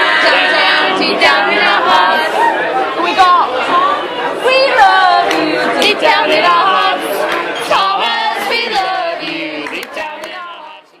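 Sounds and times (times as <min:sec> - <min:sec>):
group of voices singing: 0:00.0 - 0:11.0.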